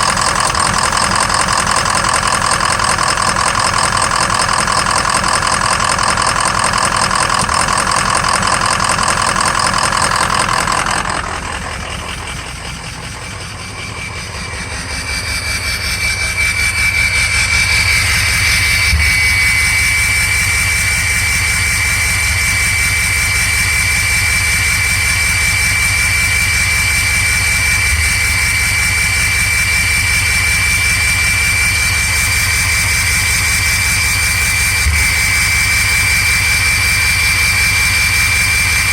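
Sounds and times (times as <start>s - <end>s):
diesel engine idling with misfire: 0.0s - 38.9s
steady high whine: 0.0s - 38.9s.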